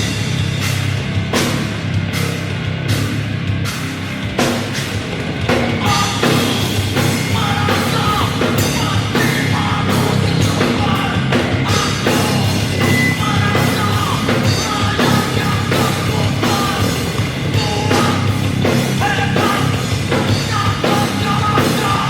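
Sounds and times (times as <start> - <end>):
drum kit: 0.0 - 22.0
rock band playing live: 0.0 - 22.0
sung and shouted vocals: 7.3 - 16.9.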